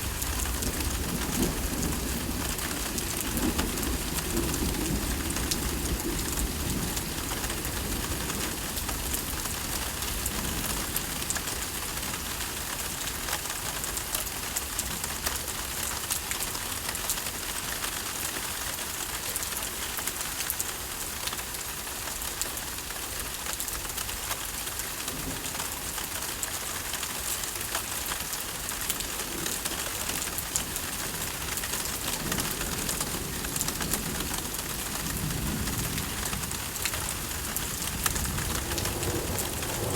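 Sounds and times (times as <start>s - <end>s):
heavy rain hissing: 28.3s - 39.9s
distant thunder rumble: 29.3s - 39.9s.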